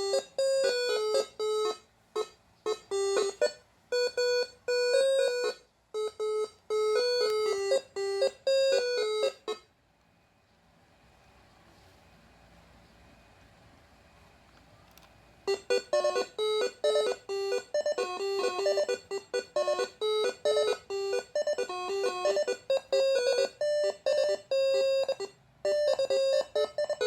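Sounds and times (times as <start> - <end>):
air horn playing staccato melody: 15.5 - 27.0.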